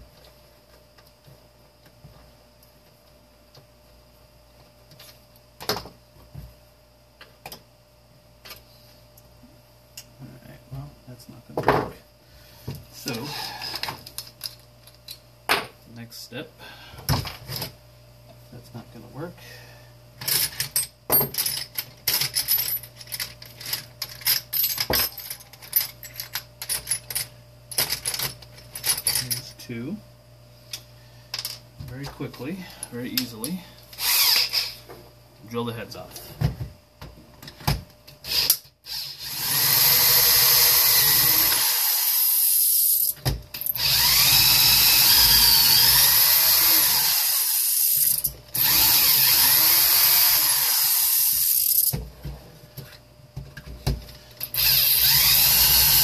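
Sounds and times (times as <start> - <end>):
metallic clinks and rattles: 20.2 - 29.5.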